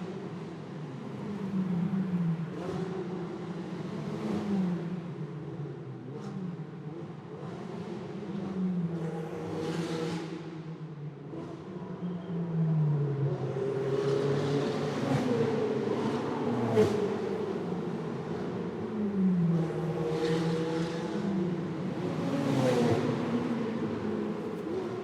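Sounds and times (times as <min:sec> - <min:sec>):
vehicles passing by: 0:21.2 - 0:25.0.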